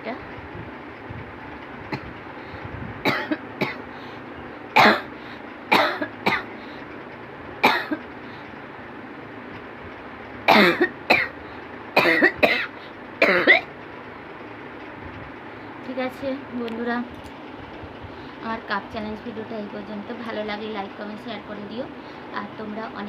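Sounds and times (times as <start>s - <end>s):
person coughing: 3.1s - 3.8s, 4.8s - 5.1s, 5.7s - 6.5s, 7.6s - 8.0s, 10.5s - 11.4s, 12.0s - 13.7s.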